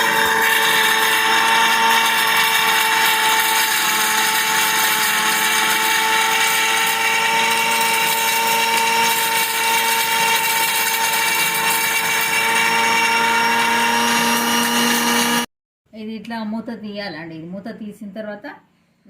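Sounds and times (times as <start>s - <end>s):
flour grinder motor whining: 0.0s - 15.5s.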